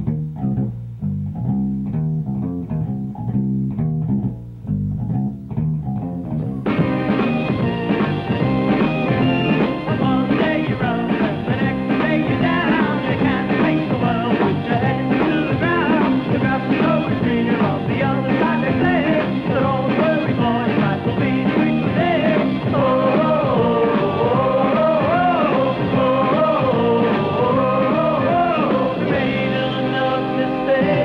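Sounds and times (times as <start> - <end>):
psychedelic rock band playing: 6.2 - 31.0
person singing: 9.1 - 31.0.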